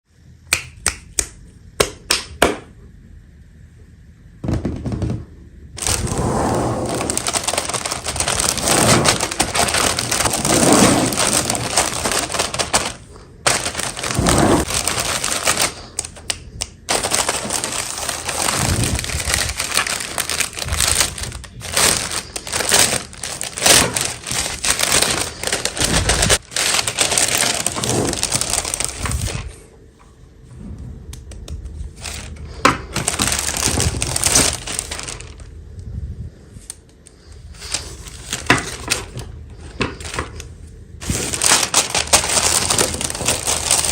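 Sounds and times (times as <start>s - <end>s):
packaging crinkling and tearing: 5.8s - 6.2s, 6.8s - 29.6s, 31.8s - 35.5s, 37.2s - 43.9s.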